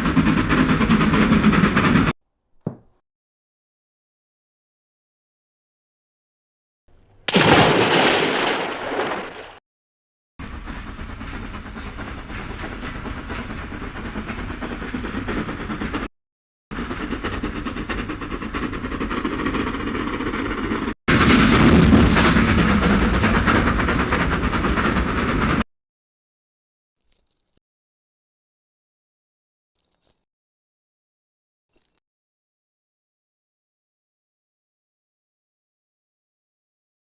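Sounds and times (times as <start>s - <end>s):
rumbling rushing noise: 16.8s - 25.6s.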